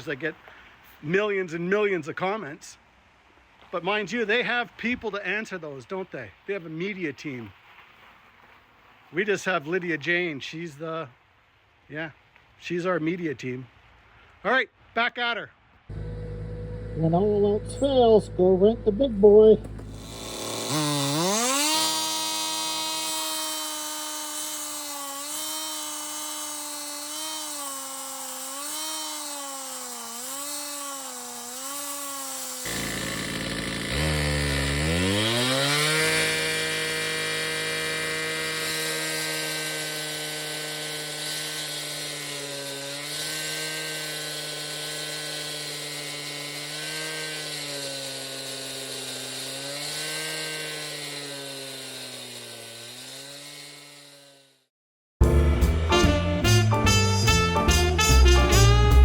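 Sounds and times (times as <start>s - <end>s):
concrete saw cutting: 15.9s - 54.7s, 55.6s - 59.0s.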